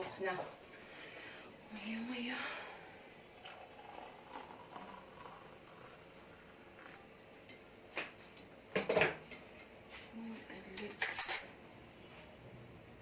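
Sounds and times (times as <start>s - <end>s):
water poured into a mug: 3.2s - 7.1s.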